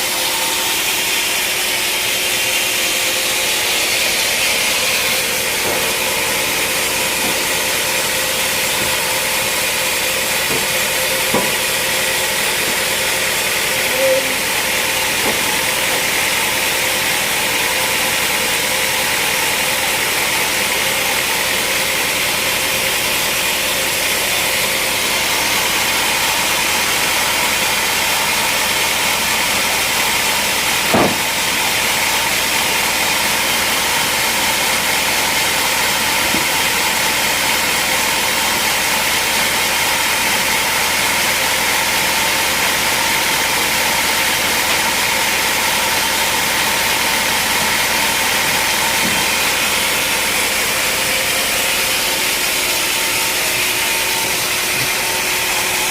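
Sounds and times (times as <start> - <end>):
sawmill machinery running: 0.0 - 55.9
sharp knock: 30.9 - 31.3.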